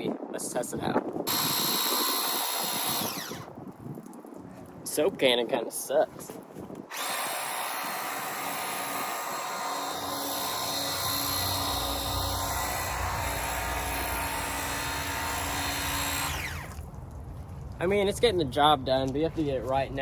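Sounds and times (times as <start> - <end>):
pressure washer motor whine: 1.3 - 3.5, 6.9 - 16.8.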